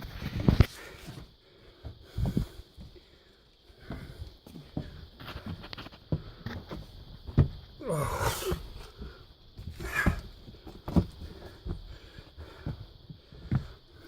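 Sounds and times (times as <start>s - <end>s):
loud heavy breath: 0.7s - 5.0s, 7.8s - 10.4s, 11.2s - 14.0s
scuffing footsteps on rock: 9.6s - 13.8s.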